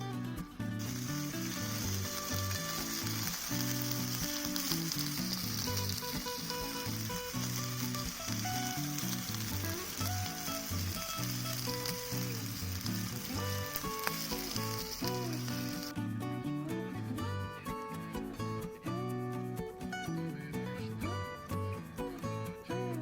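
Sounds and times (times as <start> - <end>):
food sizzling in a hot pan: 0.8 - 15.9.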